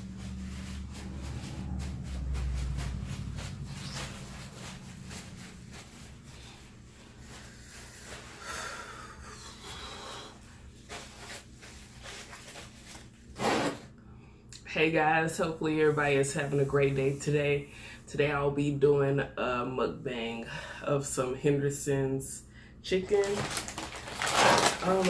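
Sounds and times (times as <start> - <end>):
low rumble: 0.0 - 8.4.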